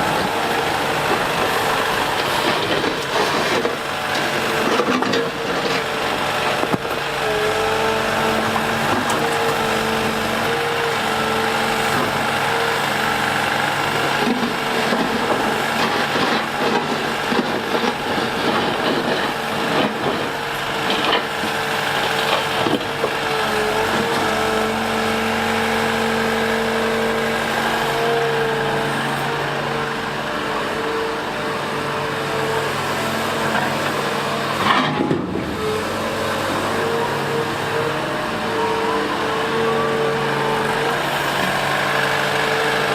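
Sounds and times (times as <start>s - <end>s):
excavator diesel engine and hydraulics: 0.0s - 42.9s.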